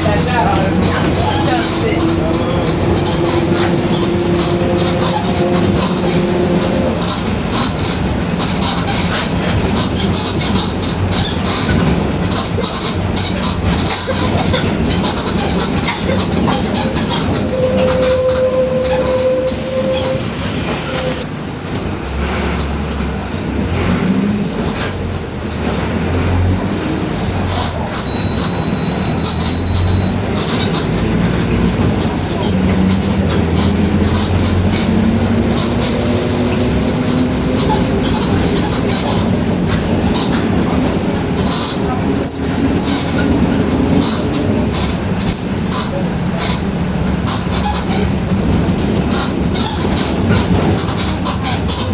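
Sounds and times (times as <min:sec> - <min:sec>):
differential growling: 0:00.0 - 0:07.8
bus body rattling: 0:00.0 - 0:51.9.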